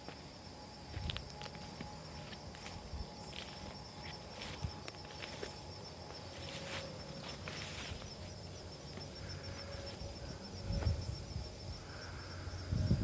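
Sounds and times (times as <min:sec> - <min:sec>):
footsteps crunching on ground: 0:00.0 - 0:10.1
insects trilling: 0:00.0 - 0:13.0.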